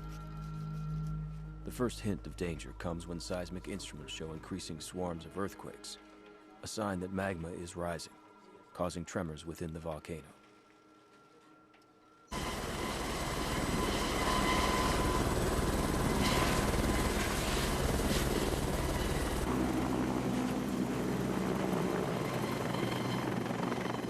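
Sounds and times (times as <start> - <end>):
helicopter rotor drone: 12.3 - 24.0.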